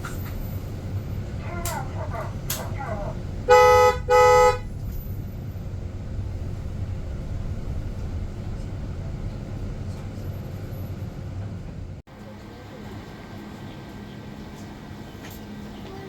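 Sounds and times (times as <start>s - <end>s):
street traffic rumble: 0.0s - 16.0s
vehicle horn toots: 3.5s - 4.7s.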